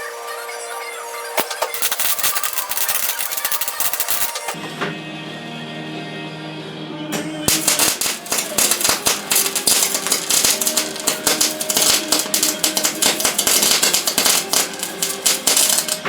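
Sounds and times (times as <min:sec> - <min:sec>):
sustained music tones: 0:07.2 - 0:16.0.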